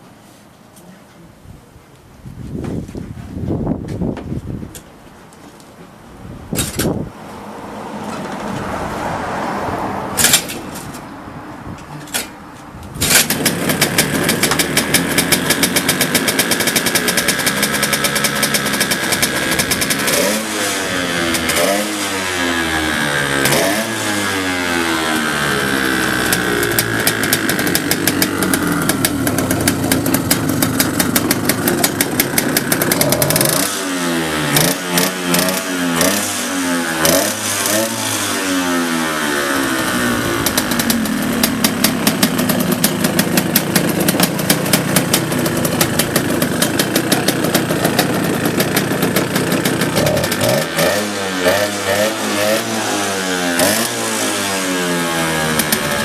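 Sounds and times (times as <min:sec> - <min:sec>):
go-kart engine revving: 0:06.6 - 0:07.1, 0:10.1 - 0:10.9, 0:12.9 - 0:56.0.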